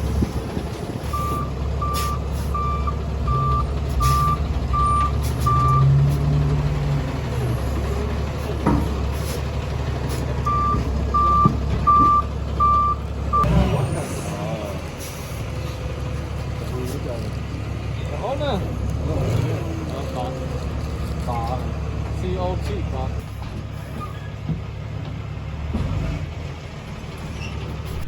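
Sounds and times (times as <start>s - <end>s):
heavy machinery engine running: 0.0s - 28.0s
back-up alarm beeping: 1.1s - 5.9s, 10.4s - 13.6s.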